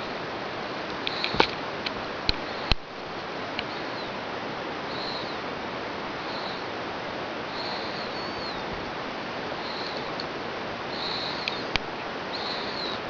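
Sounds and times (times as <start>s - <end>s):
steady hiss: 0.0s - 13.0s.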